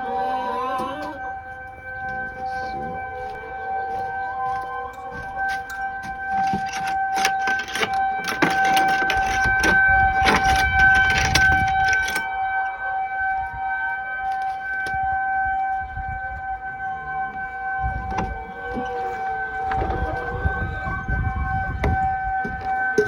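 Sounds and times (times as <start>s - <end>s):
warning siren steady tone: 0.0s - 23.0s
clattering and rattling: 6.2s - 12.3s.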